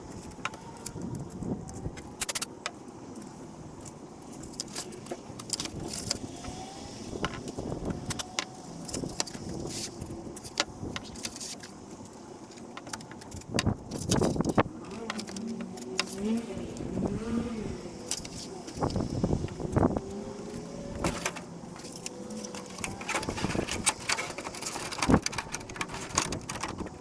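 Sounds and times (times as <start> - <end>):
small hard objects clicking: 7.2 - 16.9, 21.8 - 27.0.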